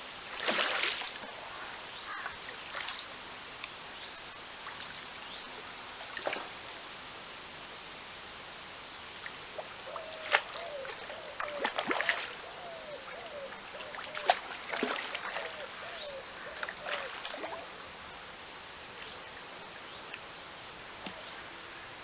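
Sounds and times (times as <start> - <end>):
water splashing: 0.3 - 1.2, 9.6 - 17.7.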